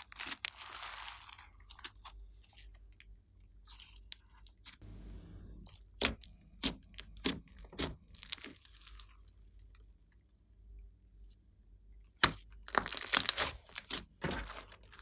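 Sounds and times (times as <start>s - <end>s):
slime kneaded crackling: 5.9s - 9.4s, 12.2s - 15.0s.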